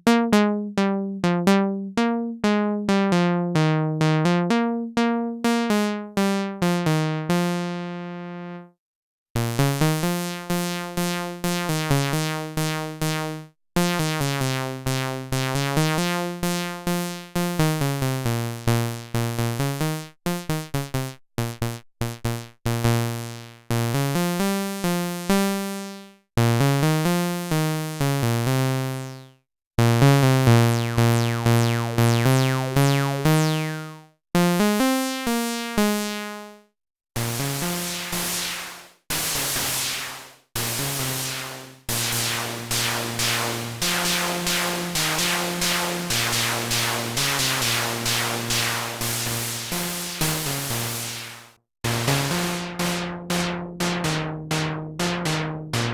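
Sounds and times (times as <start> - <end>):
synthesizer bass notes: 30.4 - 34.0, 37.2 - 55.9
buzzy pulsing synthesizer pattern: 30.5 - 34.0, 37.2 - 55.9.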